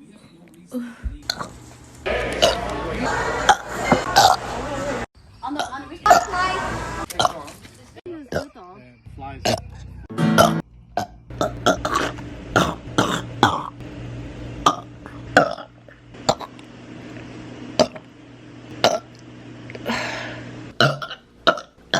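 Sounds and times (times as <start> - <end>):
woman burping: 5.6 - 6.3, 10.4 - 13.8, 20.8 - 21.8.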